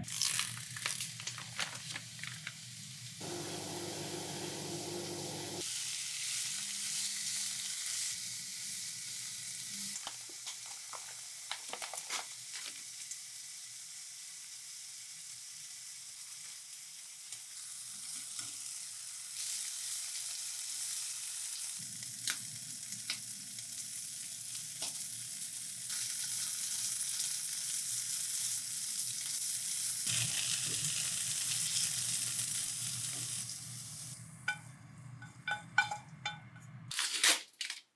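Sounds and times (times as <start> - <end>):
food sizzling in a pan: 0.0 - 36.4
utensil clicking against pan: 35.2 - 36.5.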